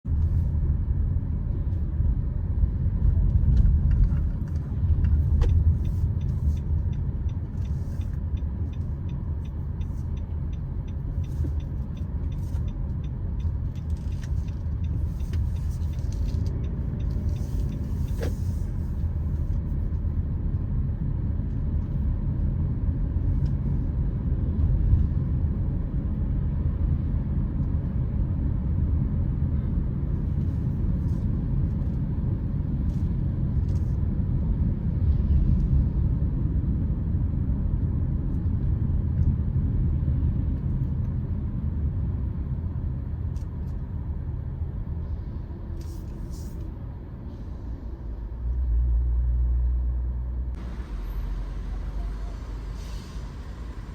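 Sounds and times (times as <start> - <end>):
car road noise rumble: 0.0 - 53.9
light regular ticking: 5.0 - 18.2.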